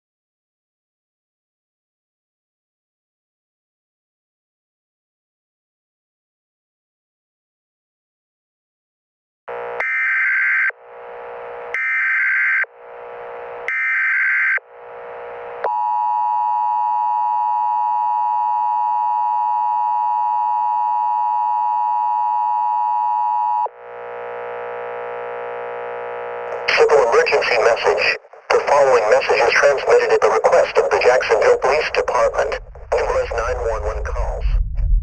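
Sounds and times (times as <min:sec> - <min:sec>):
steady attention tone: 0:26.2 - 0:35.0
quiet steady buzz: 0:30.4 - 0:35.0.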